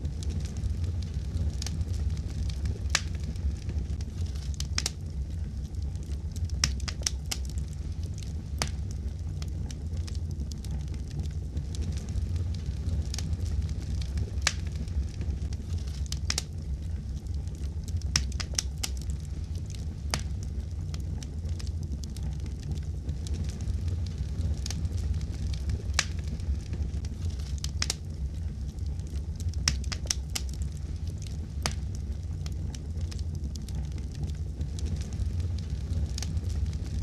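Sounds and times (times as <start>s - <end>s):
wood fire crackling: 0.0s - 37.0s
sharp pops of fire: 0.1s - 5.1s, 5.7s - 16.6s, 17.5s - 37.0s.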